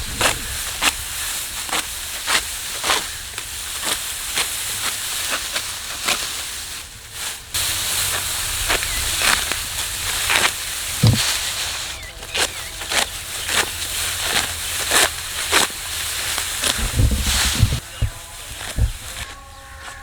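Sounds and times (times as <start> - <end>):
dry rustle of stalks: 0.0 - 20.0
rasping cutting strokes: 10.3 - 11.4, 12.2 - 20.0.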